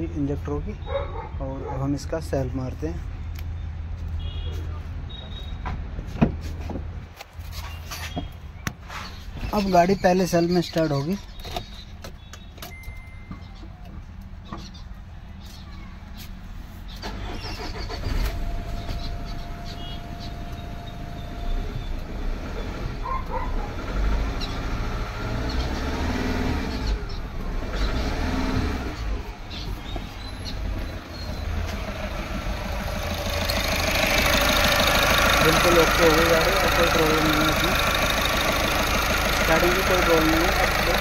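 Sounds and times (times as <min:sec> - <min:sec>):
diesel engine starting and running: 0:16.8 - 0:41.0.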